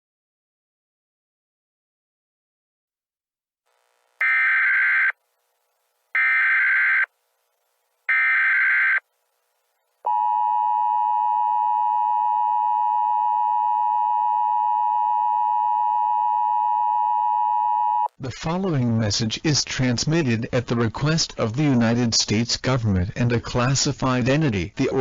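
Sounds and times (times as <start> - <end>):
screeching digital data tones: 6.2 - 7.1, 8.1 - 9.0.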